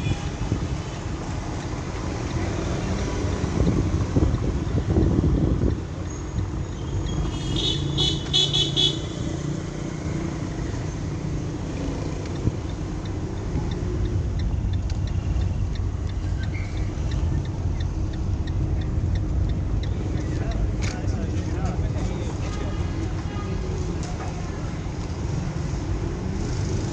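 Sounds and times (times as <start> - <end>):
car horn beeps: 0.0 - 0.6, 6.1 - 9.5, 22.2 - 23.9
passing cars rumbling: 0.0 - 26.9
light evenly spaced ticks: 0.7 - 6.9, 9.5 - 22.4.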